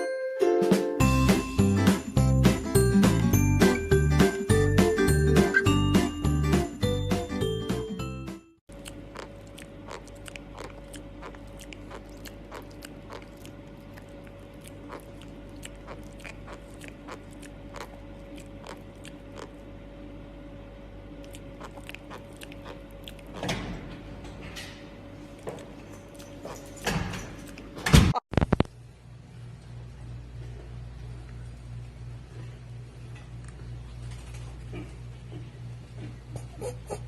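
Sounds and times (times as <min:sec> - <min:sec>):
crunchy food being chewed: 0:08.7 - 0:19.8, 0:21.0 - 0:23.4, 0:25.2 - 0:26.8
steady low hum: 0:08.7 - 0:37.0.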